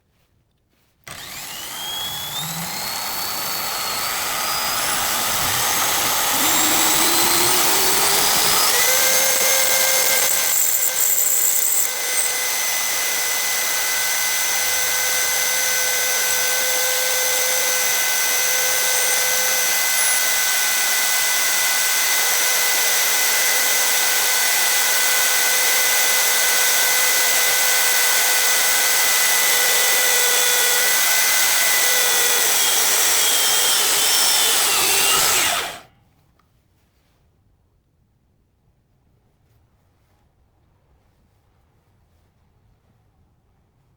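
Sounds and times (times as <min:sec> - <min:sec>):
power tool whine spinning screw: 0:01.1 - 0:35.9.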